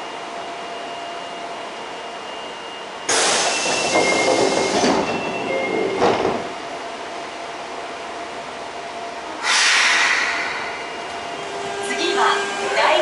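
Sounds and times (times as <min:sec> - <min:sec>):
subway car rumble: 0:00.0 - 0:13.0
loud rush of air: 0:09.3 - 0:11.4.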